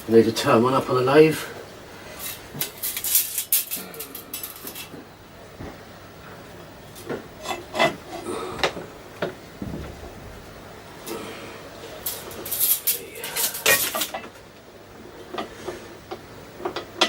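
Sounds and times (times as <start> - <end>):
hard objects rattling and scraping: 2.2 - 5.0, 11.9 - 14.4
hard objects knocking: 8.6 - 10.3.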